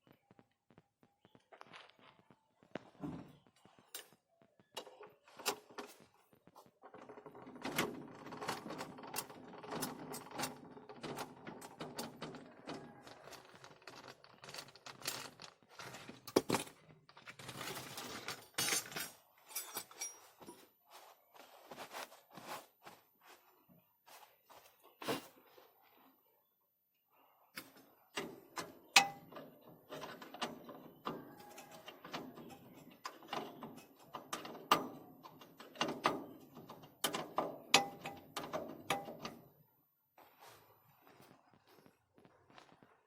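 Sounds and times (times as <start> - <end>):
hand tools clinking on metal: 17.4 - 20.7.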